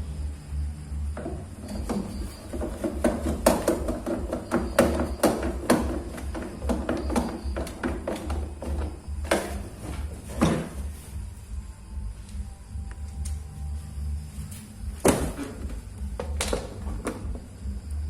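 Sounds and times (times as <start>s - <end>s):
hand tools knocking on metal parts: 1.2s - 9.6s.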